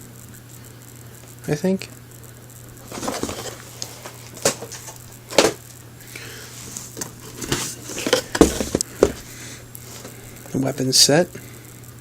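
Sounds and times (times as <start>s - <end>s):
faint steady hum: 0.0s - 12.0s
cardboard boxes knocking: 7.4s - 9.3s.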